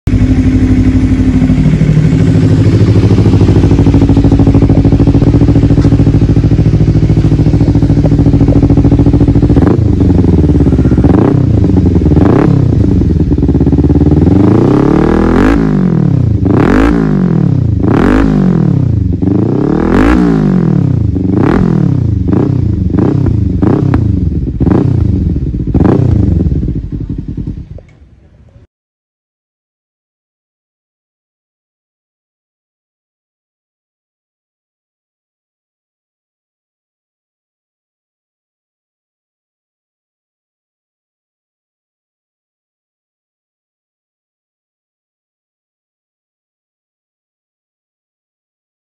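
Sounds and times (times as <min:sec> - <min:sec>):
motorcycle engine idling: 0:00.1 - 0:19.6, 0:20.5 - 0:28.6
motorcycle engine revving: 0:00.1 - 0:27.8.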